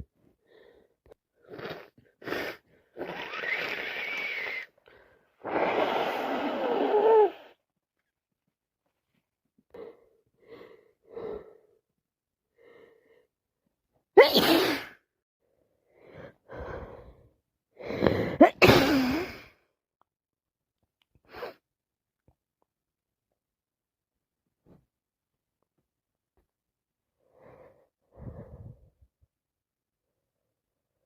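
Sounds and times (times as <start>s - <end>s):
short sniff: 5.4s - 7.5s
woman sneezing: 14.2s - 15.0s, 18.4s - 19.4s.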